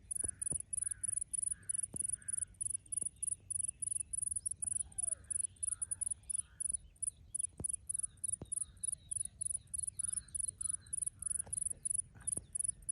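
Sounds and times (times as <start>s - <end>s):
sharp clicks: 0.0s - 6.8s
faint bird chirps: 0.0s - 12.9s.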